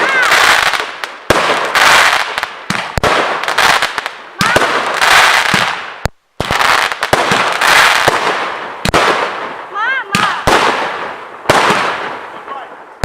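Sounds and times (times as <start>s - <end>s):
crackling firework bursts: 0.0s - 13.0s.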